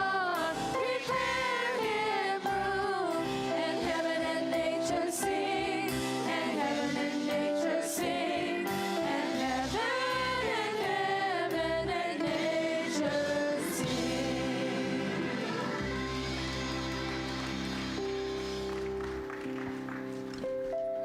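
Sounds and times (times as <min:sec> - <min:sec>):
group singing gospel: 0:00.0 - 0:17.7
sustained instrumental chords: 0:11.6 - 0:19.7.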